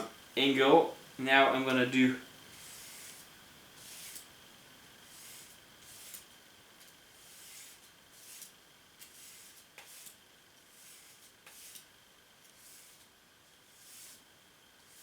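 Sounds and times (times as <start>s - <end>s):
knife scraping on sharpener: 5.1s - 6.3s, 7.2s - 11.9s.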